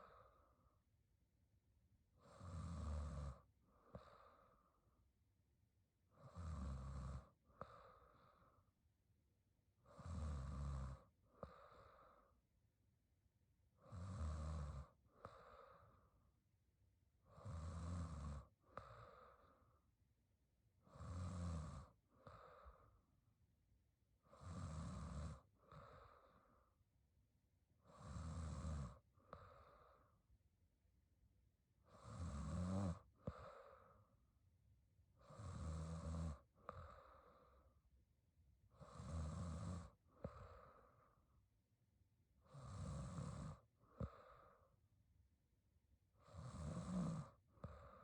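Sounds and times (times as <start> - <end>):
woman snoring: 2.1 - 4.3, 6.1 - 8.0, 9.8 - 12.4, 13.8 - 16.0, 17.2 - 19.5, 20.8 - 22.9, 24.2 - 26.5, 27.8 - 30.2, 31.8 - 33.8, 35.1 - 37.2, 38.7 - 40.8, 42.4 - 44.5, 46.1 - 48.0.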